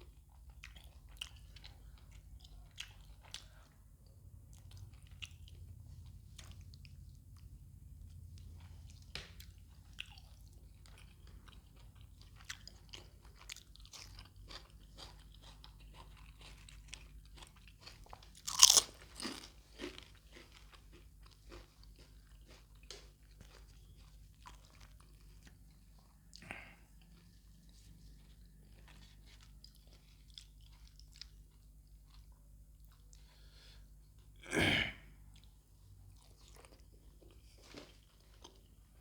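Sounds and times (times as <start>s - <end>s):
crunchy bite: 18.4s - 20.0s.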